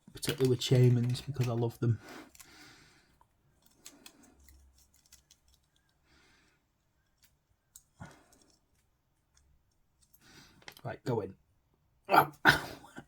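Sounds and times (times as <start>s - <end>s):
plastic parts clicking and tapping: 0.0s - 6.0s.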